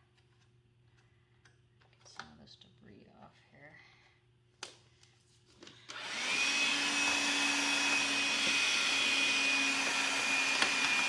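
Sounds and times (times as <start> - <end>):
handheld vacuum cleaner motor whine: 5.9 - 11.0.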